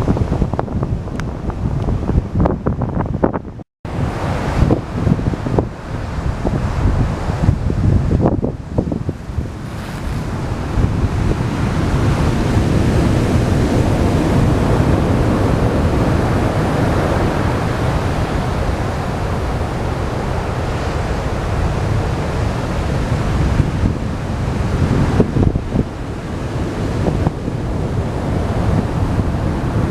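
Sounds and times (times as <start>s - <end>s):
heavy surf crashing: 0.0s - 29.9s
wind buffeting microphone: 0.0s - 29.9s.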